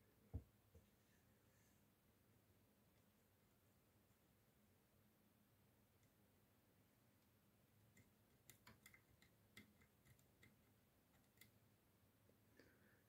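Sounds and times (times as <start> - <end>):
faint small clicks: 7.9 - 11.6.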